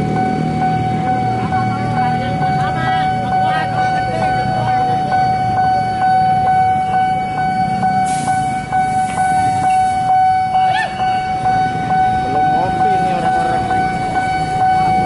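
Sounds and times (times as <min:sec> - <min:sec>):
level crossing warning alarm: 0:00.0 - 0:15.0
road traffic rumble: 0:00.0 - 0:15.0.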